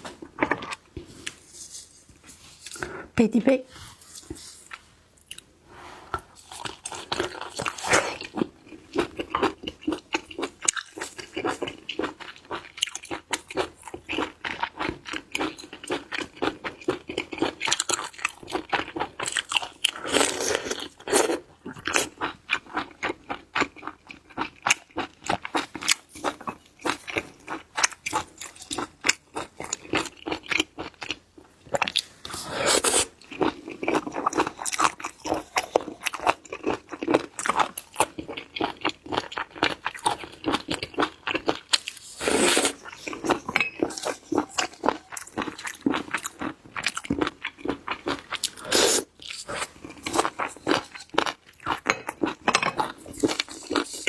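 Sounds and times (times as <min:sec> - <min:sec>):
crunching bites and chewing: 0:16.0 - 0:54.0.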